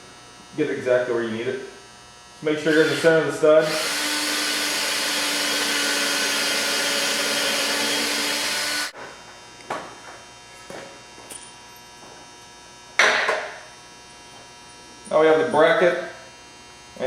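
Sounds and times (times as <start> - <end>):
electric drill boring into wood: 2.7 - 8.9.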